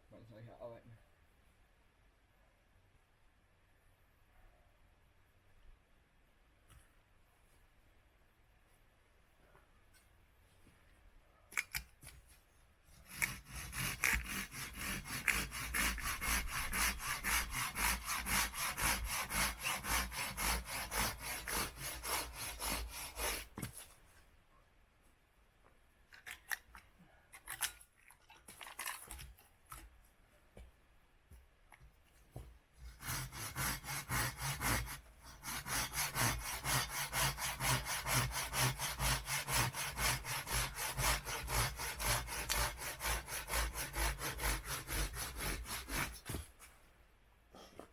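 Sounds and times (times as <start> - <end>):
hand saw cutting wood: 13.0 - 23.8, 32.8 - 46.5.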